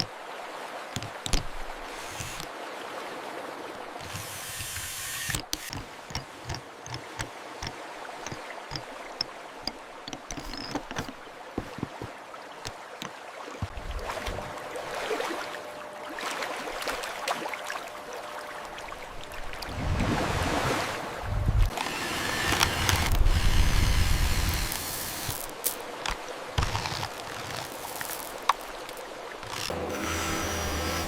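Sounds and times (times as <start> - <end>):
water swishing and running: 0.0 - 29.7
plastic toys clicking and knocking: 1.0 - 2.5, 4.0 - 11.2, 21.8 - 29.8.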